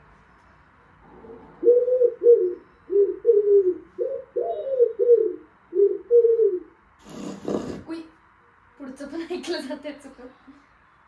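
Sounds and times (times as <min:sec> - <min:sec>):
pigeon cooing through a speaker: 0:01.0 - 0:07.8.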